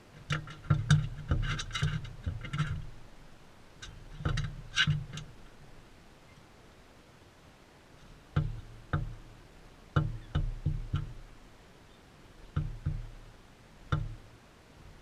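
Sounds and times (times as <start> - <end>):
sharp knocks on hollow surface: 0.2 - 2.9, 8.3 - 9.3, 9.9 - 11.3, 12.5 - 13.3, 13.9 - 14.3.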